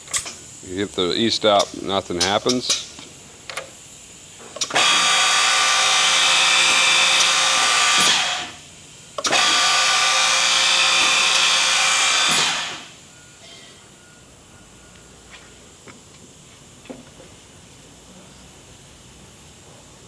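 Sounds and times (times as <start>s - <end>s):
drilling machine motor whine: 4.6s - 13.0s.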